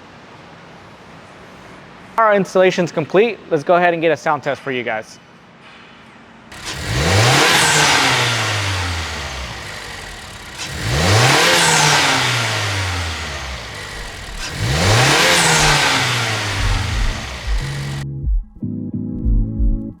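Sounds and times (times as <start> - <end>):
car engine revving: 6.5 - 18.0.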